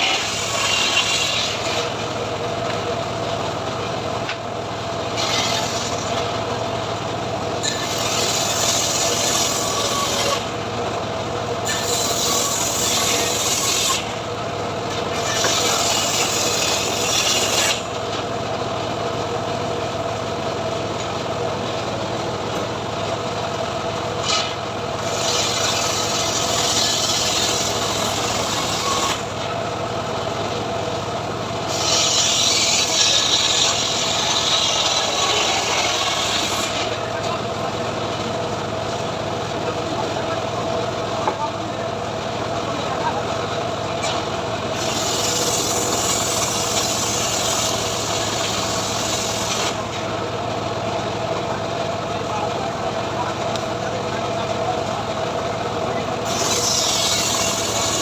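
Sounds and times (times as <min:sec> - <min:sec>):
sawmill machine running: 0:00.0 - 0:58.0
saw blade hissing through wood: 0:31.7 - 0:36.9, 0:44.8 - 0:49.9, 0:56.2 - 0:58.0.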